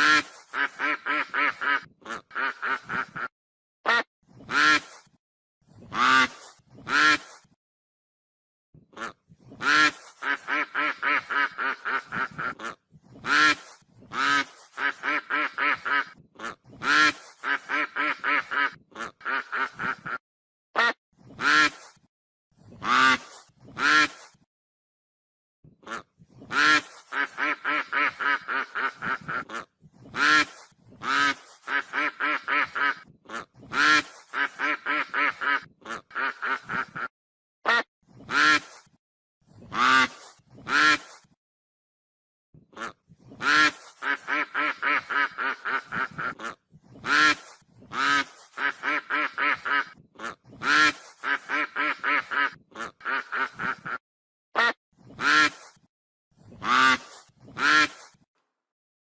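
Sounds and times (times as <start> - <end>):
goose honking: 0.0 - 3.3, 9.0 - 20.2, 25.9 - 37.1, 42.8 - 54.0, 56.6 - 58.0.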